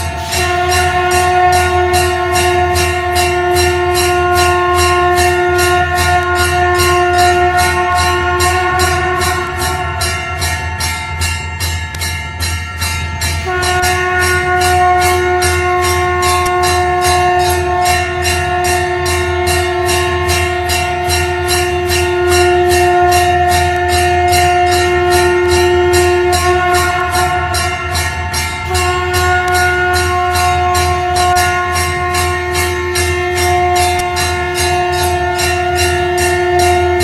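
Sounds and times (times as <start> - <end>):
conch shell blown: 0.0 - 37.0
temple bell rung fast: 0.0 - 37.0.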